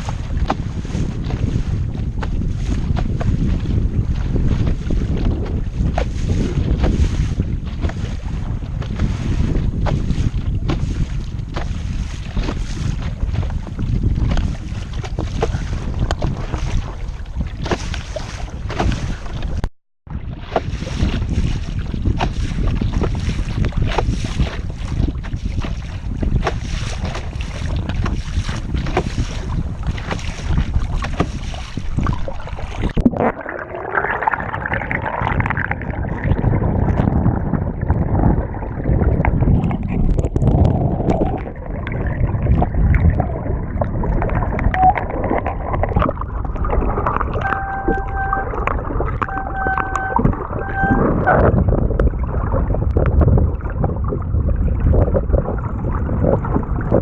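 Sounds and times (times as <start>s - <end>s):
water splashing and gurgling: 0.0s - 57.0s
wind buffeting microphone: 0.0s - 57.0s
short steady tones: 47.4s - 51.5s.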